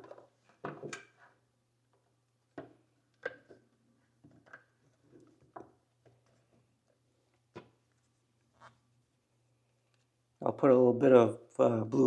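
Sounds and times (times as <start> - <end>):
soft handling sounds: 3.5 - 10.2.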